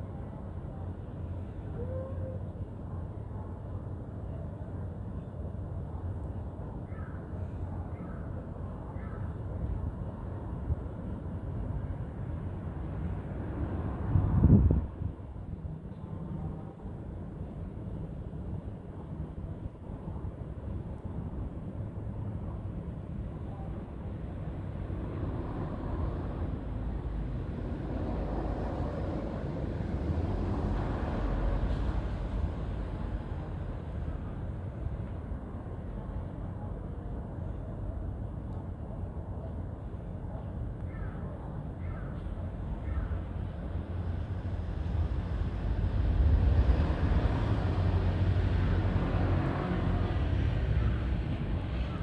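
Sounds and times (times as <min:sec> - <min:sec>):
low city hum: 0:00.0 - 0:52.0
strong wind buffeting microphone: 0:13.7 - 0:15.4.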